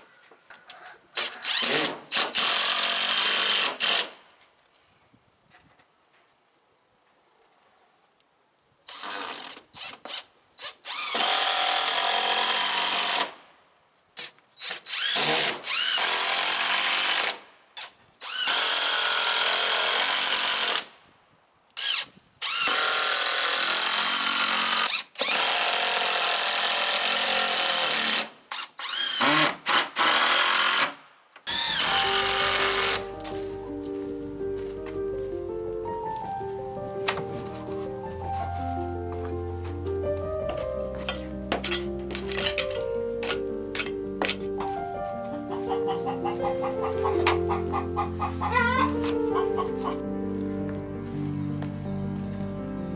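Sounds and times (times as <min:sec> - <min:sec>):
power drill motor whining: 0:31.5 - 0:33.0.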